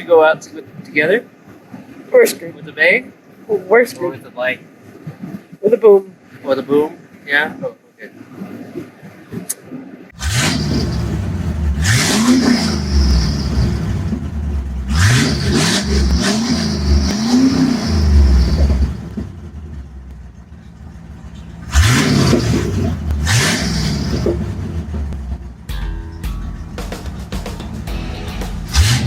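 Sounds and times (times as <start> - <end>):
vehicle engine revving: 10.1 - 25.8, 26.4 - 29.0.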